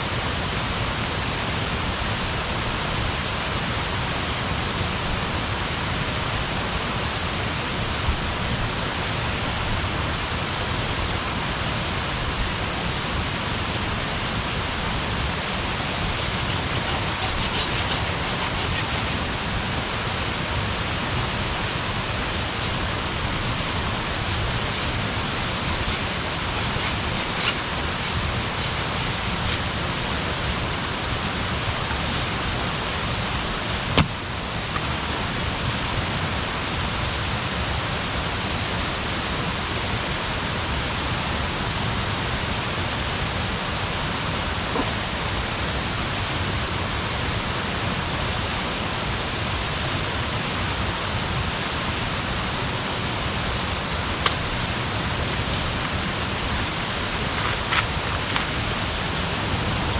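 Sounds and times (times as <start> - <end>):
steady rushing hiss: 11.6 - 36.1, 50.0 - 59.9
campfire crackling: 21.1 - 30.2.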